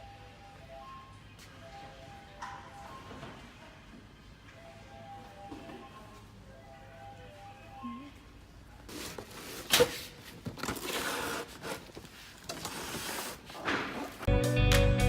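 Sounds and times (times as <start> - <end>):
rustling and handling noise: 8.8 - 14.3.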